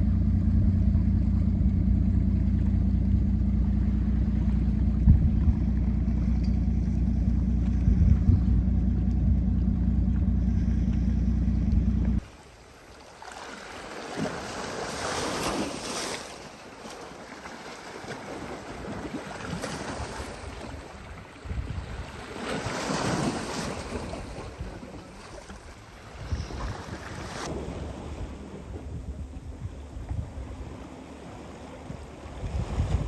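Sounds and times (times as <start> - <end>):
wind on microphone: 4.2 - 10.8, 18.8 - 33.0
sea waves washing in: 12.1 - 33.0.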